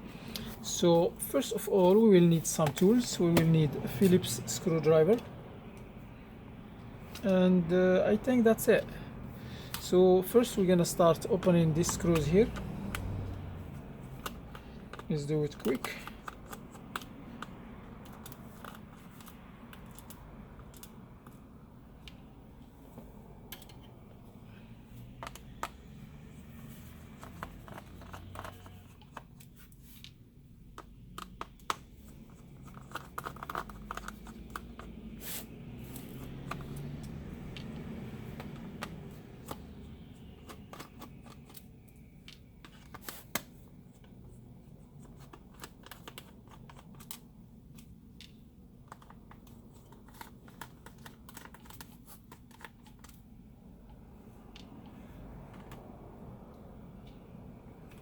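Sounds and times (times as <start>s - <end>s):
screwdriver clicks and scratches: 26.9s - 30.2s, 30.8s - 35.0s.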